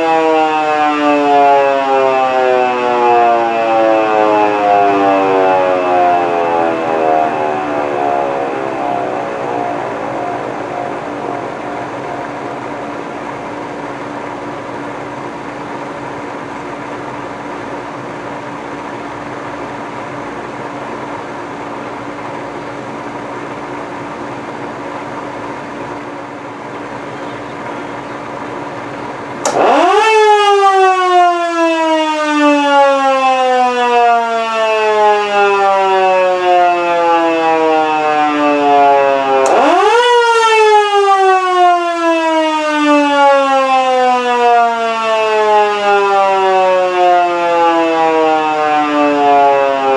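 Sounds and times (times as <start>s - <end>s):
siren tone rising and sliding down: 0.0s - 14.2s, 29.4s - 49.9s
mechanical siren growling: 0.0s - 49.9s.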